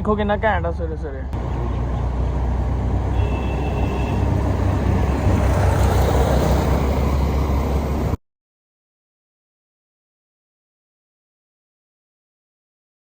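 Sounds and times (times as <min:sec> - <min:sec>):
road noise: 0:00.0 - 0:08.2
vehicle engine drone: 0:00.0 - 0:08.2.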